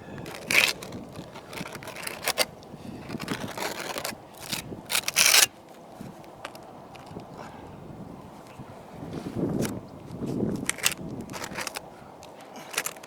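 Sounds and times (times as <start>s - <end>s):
trowel scraping roofing mastic: 0.2s - 5.5s.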